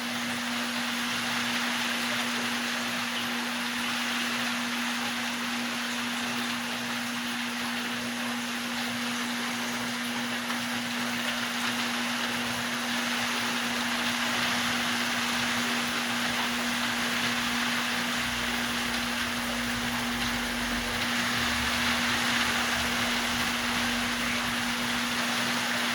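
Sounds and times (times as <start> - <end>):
aquarium water splashing: 0.0 - 25.9
constant hum: 8.0 - 25.9.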